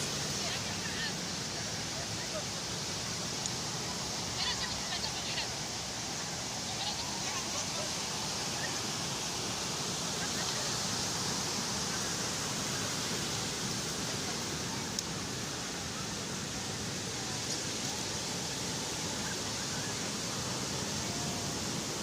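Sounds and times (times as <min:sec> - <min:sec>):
sea surf hissing: 0:00.0 - 0:22.0
faint click: 0:14.9 - 0:15.1.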